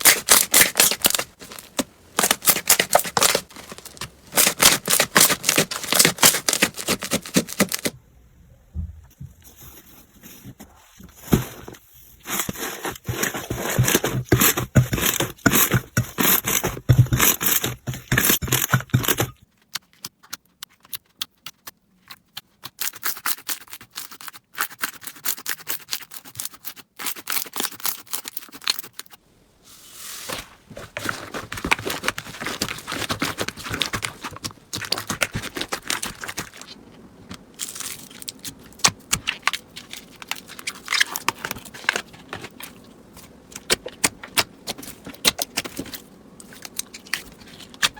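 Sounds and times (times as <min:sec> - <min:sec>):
slime crackling and popping: 0:31.4 - 0:42.9.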